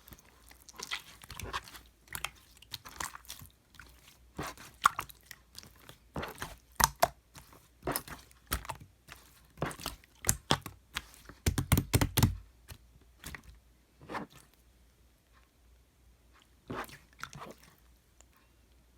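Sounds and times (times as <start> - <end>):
hands squishing slime: 0.0 - 13.5.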